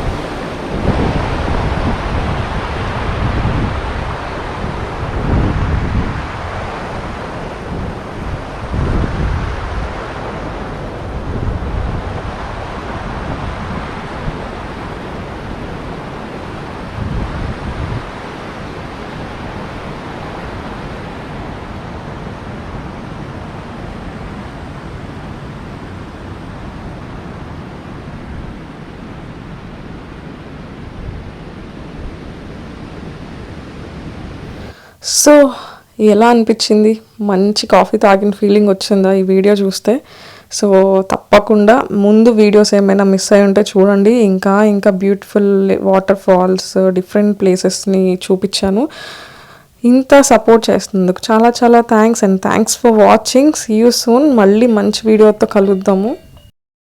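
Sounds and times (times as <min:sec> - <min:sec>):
wind buffeting microphone: 0:00.0 - 0:40.0.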